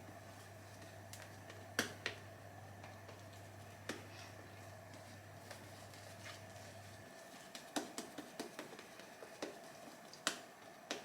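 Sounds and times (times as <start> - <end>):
low steady room hum: 0.0 - 11.0
faint clicks and taps: 7.3 - 11.0.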